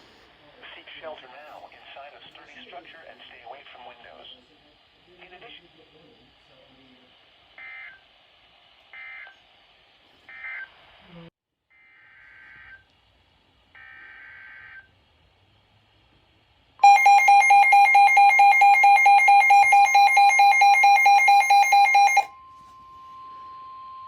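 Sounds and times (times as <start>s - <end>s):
faint steady tone: 16.8s - 24.0s
loud steady attention tone: 16.8s - 24.0s.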